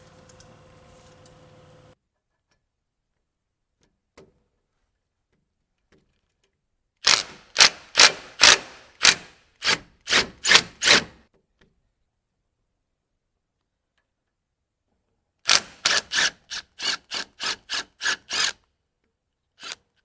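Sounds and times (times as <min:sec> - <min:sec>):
faint click: 0:00.0 - 0:02.0.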